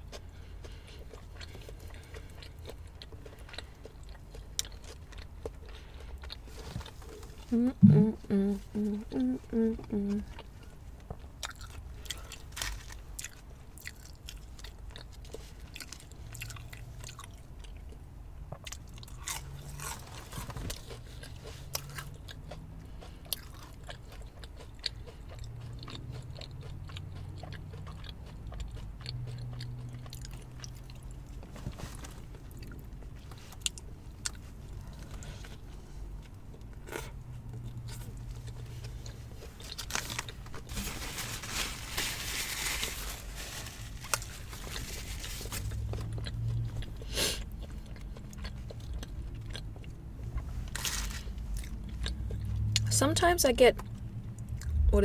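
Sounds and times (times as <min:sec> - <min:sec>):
person chewing crunchy food: 0:00.0 - 0:08.2, 0:08.8 - 0:52.8
low hum: 0:06.4 - 0:11.2.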